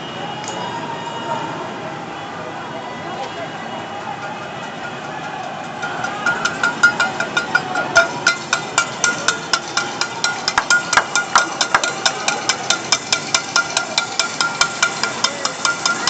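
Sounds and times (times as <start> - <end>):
metal pots banging: 5.8 - 16.0.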